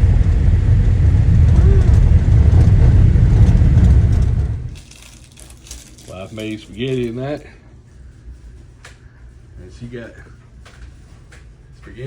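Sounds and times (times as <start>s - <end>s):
car rumbling on road: 0.0s - 4.7s
wind noise: 0.0s - 4.8s.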